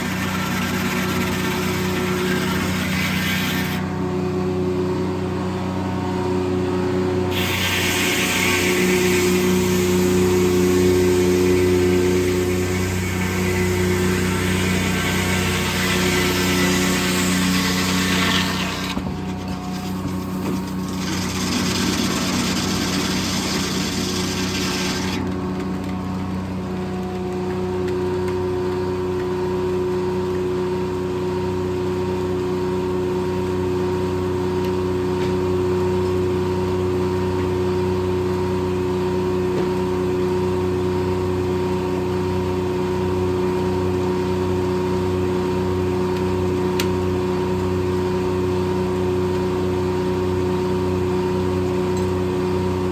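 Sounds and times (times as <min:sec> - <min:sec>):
saw blade cutting log hiss: 0:00.0 - 0:03.8, 0:07.3 - 0:19.0, 0:19.7 - 0:25.2
sawmill engine and spinning blade: 0:00.0 - 0:27.1.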